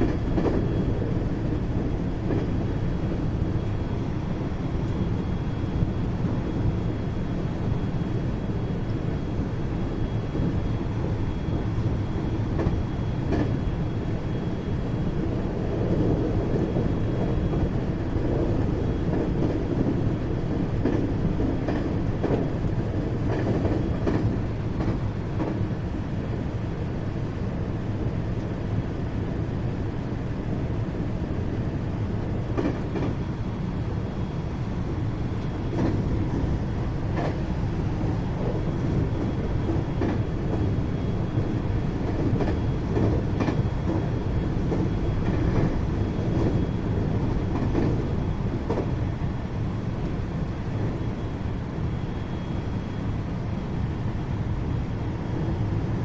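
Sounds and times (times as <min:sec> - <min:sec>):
rail-joint clicks: 0:00.0 - 0:02.8, 0:12.5 - 0:13.6, 0:17.2 - 0:25.7, 0:32.4 - 0:33.3, 0:35.4 - 0:40.8, 0:41.4 - 0:46.6, 0:47.2 - 0:49.0
train wheels rumbling: 0:00.0 - 0:56.0
faint high whine: 0:49.2 - 0:56.0.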